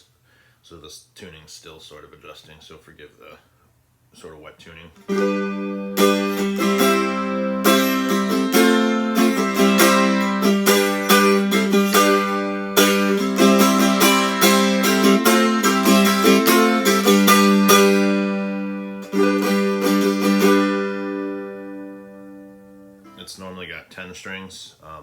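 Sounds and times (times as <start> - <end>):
picked string instrument notes and chords: 5.0 - 24.5.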